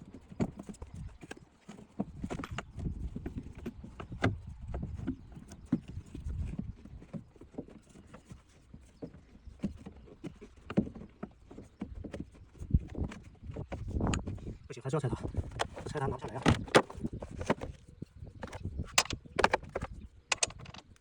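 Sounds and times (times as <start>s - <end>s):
clicks and knocks of tools: 18.4s - 21.0s.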